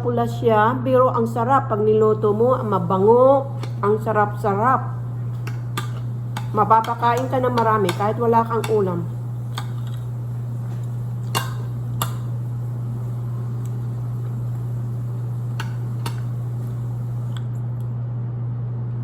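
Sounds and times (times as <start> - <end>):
steady low hum: 0.0 - 19.0
cutlery clicking on a plate: 5.4 - 8.9, 10.7 - 12.3.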